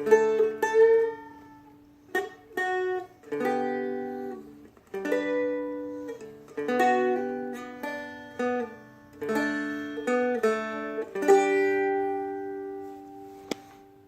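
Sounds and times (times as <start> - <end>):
dulcimer strummed chords: 0.0 - 14.0.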